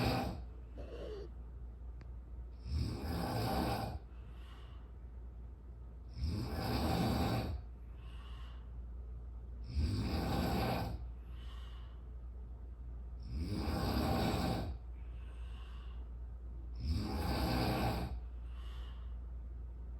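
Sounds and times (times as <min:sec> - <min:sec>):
person snoring loudly: 0:00.0 - 0:01.3, 0:02.6 - 0:04.0, 0:06.1 - 0:07.6, 0:09.7 - 0:11.0, 0:13.3 - 0:14.8, 0:16.8 - 0:18.2
faint breaths: 0:00.0 - 0:01.6, 0:02.5 - 0:19.9.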